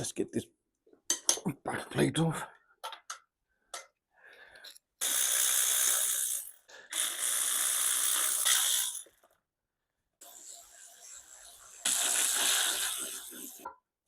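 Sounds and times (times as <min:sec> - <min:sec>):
power ratchet spinning bolts: 0:05.0 - 0:09.2.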